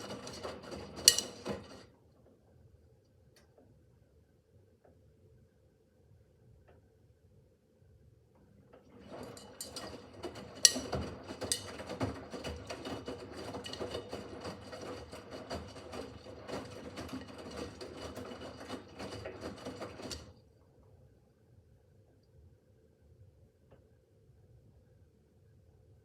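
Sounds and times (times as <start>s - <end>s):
washing machine drum clicking and rattling: 0.0s - 1.9s, 8.8s - 20.4s.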